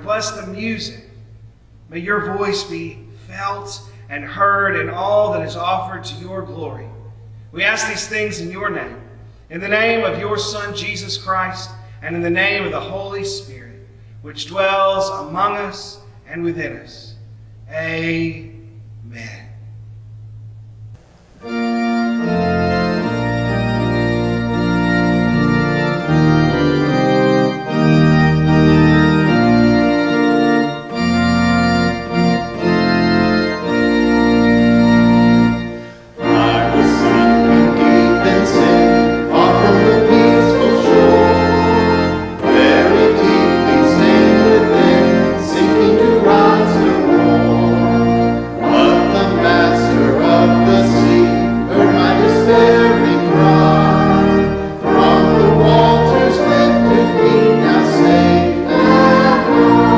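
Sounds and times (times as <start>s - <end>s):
church organ chords: 0.0s - 19.8s, 21.0s - 59.9s
people singing with vibrato: 35.7s - 59.9s.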